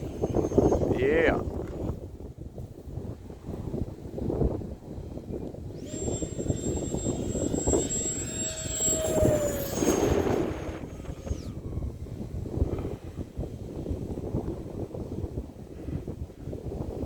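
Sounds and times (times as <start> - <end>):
rc jet fan whine: 0.0 - 2.0, 5.3 - 13.0
wind rumbling on microphone: 0.0 - 17.0.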